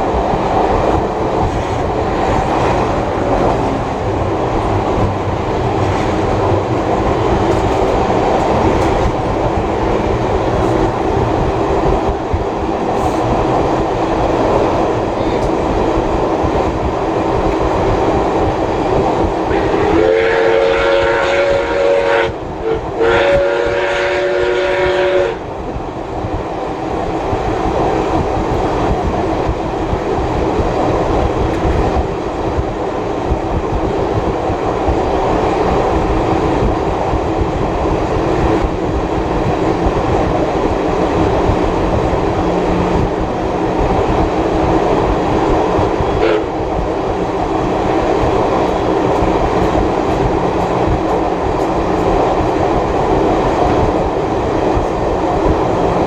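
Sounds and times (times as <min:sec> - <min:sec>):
train carriages rumbling on track: 0:00.0 - 0:56.0
steam locomotive whistle: 0:19.5 - 0:25.4, 0:46.2 - 0:46.5.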